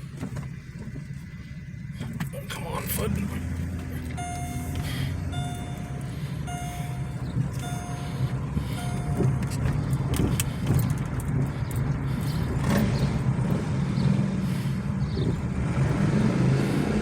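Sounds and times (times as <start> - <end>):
car engine and road rumble: 0.0 - 17.0
repeating beep tone: 4.2 - 9.4.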